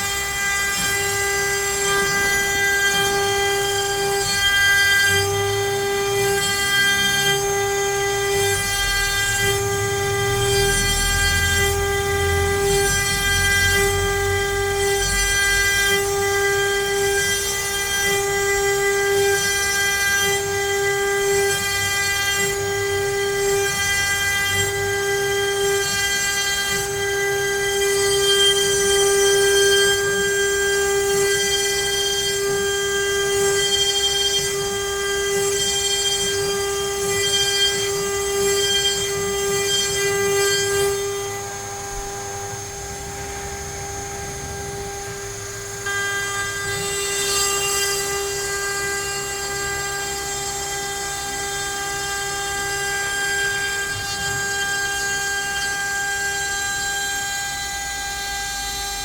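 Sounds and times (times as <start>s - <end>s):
router spindle whining: 0.0s - 59.0s
low rumble: 42.0s - 45.8s.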